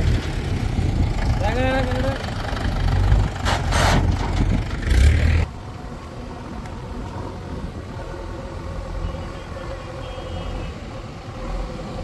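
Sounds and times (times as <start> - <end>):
diesel engine running: 0.0 - 5.5.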